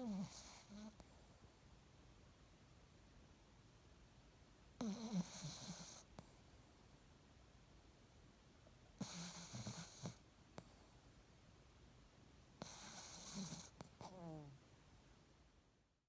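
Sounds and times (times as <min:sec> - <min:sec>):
snoring: 0:00.0 - 0:01.0, 0:04.8 - 0:06.2, 0:09.0 - 0:10.7, 0:12.6 - 0:14.6.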